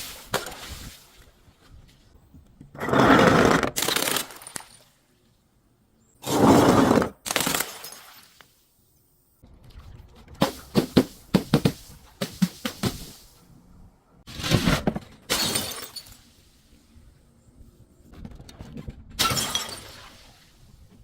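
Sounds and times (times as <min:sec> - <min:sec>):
glass shattering: 0:15.3 - 0:16.3, 0:19.2 - 0:20.2.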